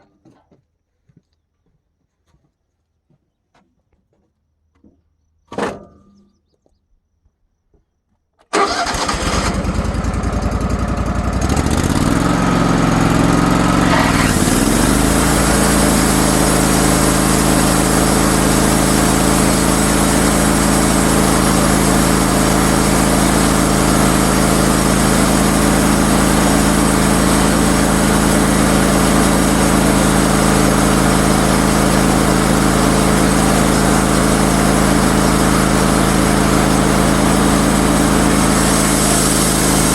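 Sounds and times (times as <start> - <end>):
sawmill motor running: 8.5 - 39.9.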